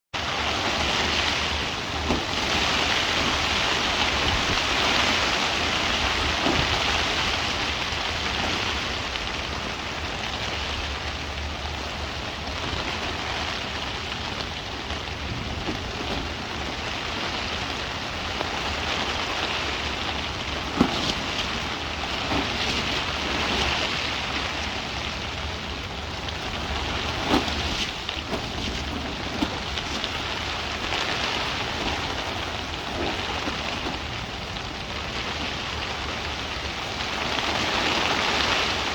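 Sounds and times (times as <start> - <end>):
gusty wind rushing: 14.4 - 38.9.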